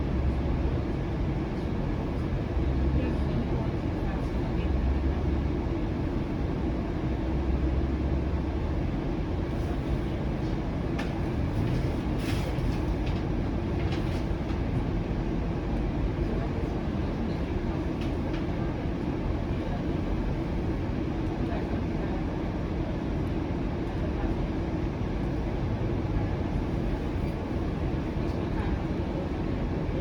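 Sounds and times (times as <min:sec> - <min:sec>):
streetcar rolling rumble: 0:00.0 - 0:30.0.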